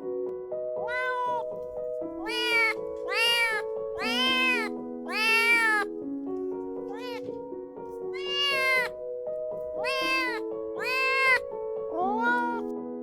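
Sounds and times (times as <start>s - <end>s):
background music with held notes: 0.0s - 13.0s
kitten meowing: 0.8s - 1.6s, 2.2s - 5.9s, 6.9s - 7.3s, 8.1s - 9.0s, 9.7s - 12.7s.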